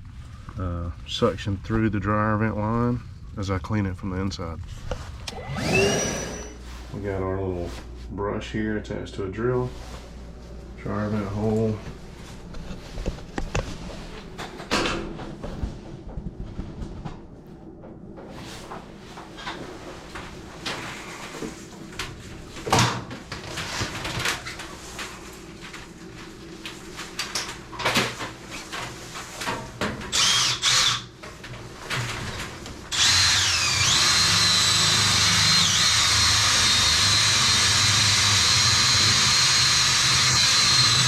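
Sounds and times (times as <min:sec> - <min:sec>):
drill whining: 0:05.3 - 0:06.6, 0:30.1 - 0:31.1, 0:32.9 - 0:41.0.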